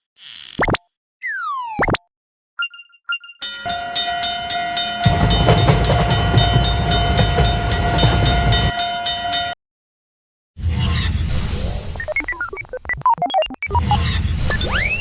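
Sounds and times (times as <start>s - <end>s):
crossing bell dinging: 3.4s - 9.6s
steady tone: 3.4s - 9.6s
train rumbling past: 3.7s - 9.6s.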